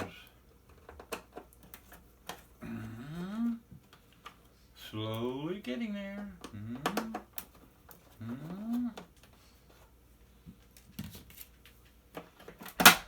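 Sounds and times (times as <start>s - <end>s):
short vocal sound: 2.6s - 3.7s, 6.4s - 7.2s, 8.2s - 9.1s.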